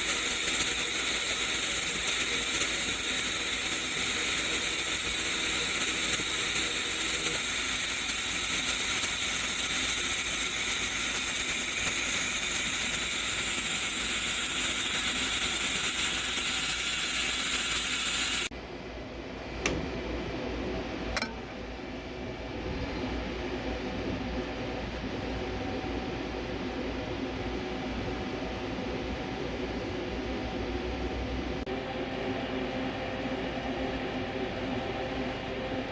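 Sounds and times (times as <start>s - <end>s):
welding arc hiss: 0.0s - 18.5s
machine hum: 0.0s - 18.6s.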